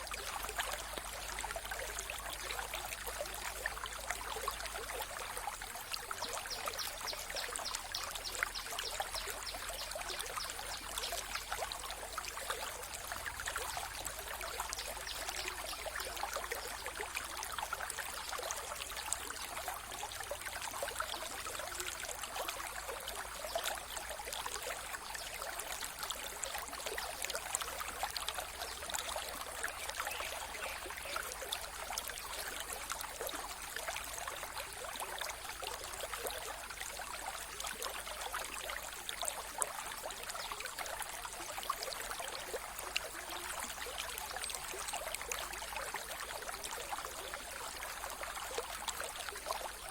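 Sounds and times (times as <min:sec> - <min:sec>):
river water flowing over stones: 0:00.0 - 0:49.9.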